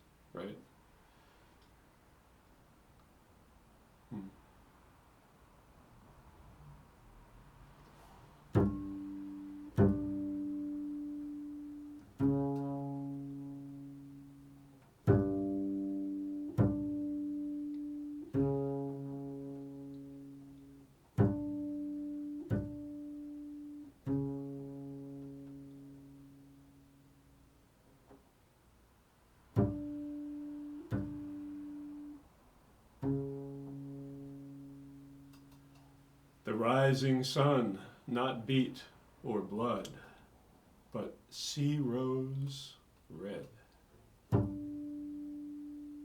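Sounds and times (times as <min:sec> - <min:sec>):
plucked low string notes: 0:08.6 - 0:27.5, 0:29.5 - 0:32.2, 0:33.0 - 0:36.4, 0:44.3 - 0:46.0.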